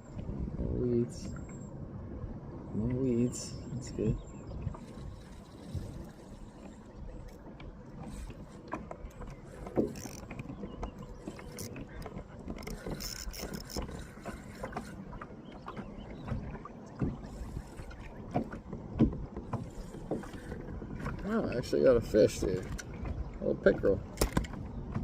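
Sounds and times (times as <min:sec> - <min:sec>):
fishing reel gears clicking: 0:09.9 - 0:10.3, 0:12.6 - 0:13.8
knocks against kayak hull: 0:18.3 - 0:20.3.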